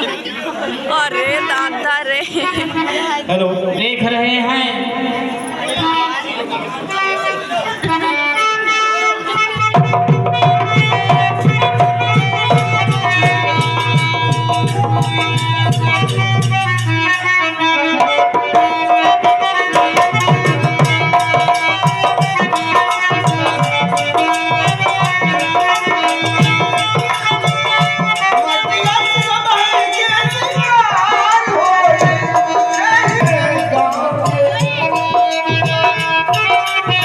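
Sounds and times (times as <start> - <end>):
tabla drumming: 1.0 - 37.0.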